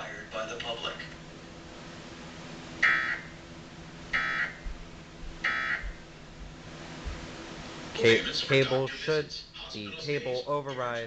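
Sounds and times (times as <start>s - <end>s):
buzzy data tone bursts: 2.8s - 3.4s, 4.1s - 4.7s, 5.4s - 6.1s.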